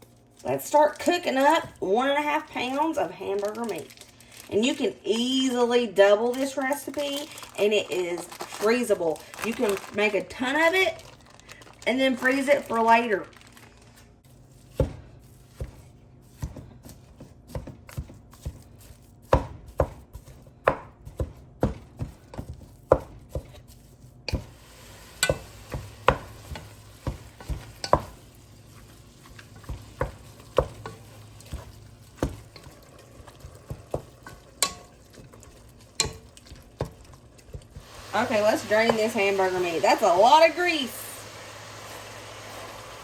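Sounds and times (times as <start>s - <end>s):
faint frying sizzle: 22.0s - 43.0s.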